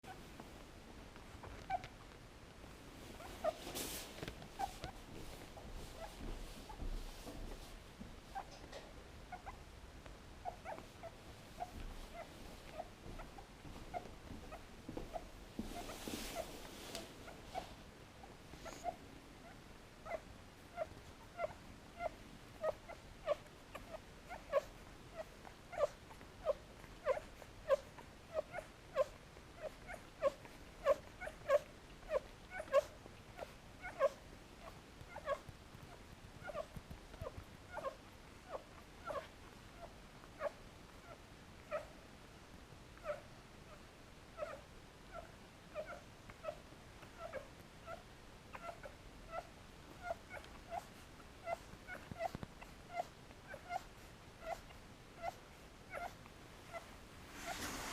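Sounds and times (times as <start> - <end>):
puppies whimpering squeaks: 20.8 - 36.7, 37.7 - 41.9, 47.2 - 57.6.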